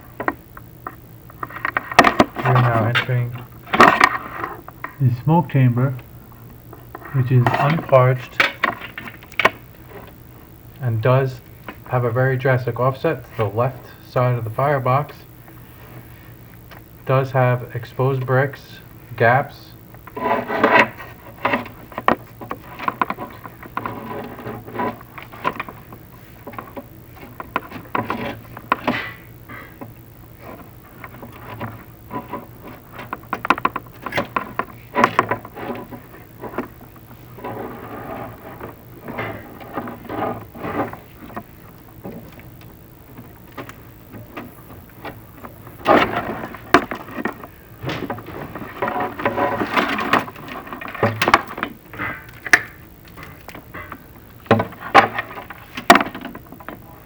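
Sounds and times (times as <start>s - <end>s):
low hum: 0.0s - 57.0s
cable scraping against masonry: 30.4s - 41.6s.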